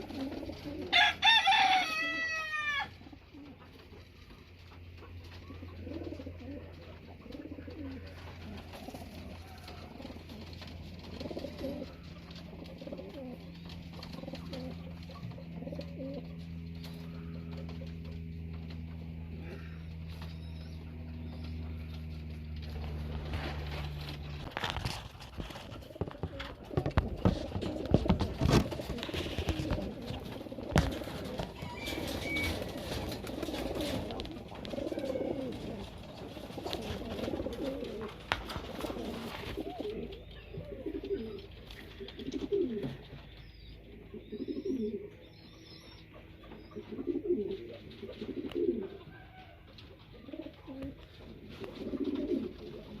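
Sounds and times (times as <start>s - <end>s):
pigeons cooing: 0.0s - 53.0s
sharp knocks and clattering: 21.4s - 34.8s.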